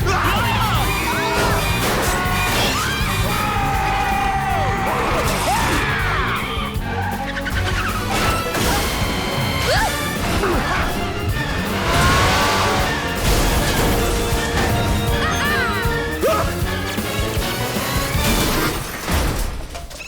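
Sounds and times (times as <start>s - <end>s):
fast film score: 0.0s - 20.0s
cartoon crashes and bangs: 11.8s - 15.6s.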